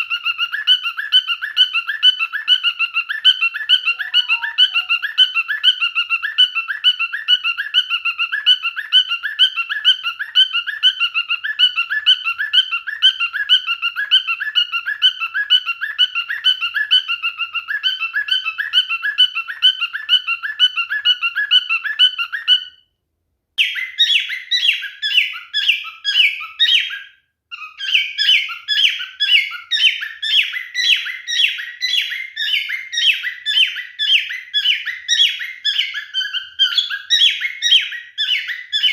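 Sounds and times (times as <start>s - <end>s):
cockatiel chirping whistles: 0.0s - 22.9s, 23.6s - 38.9s.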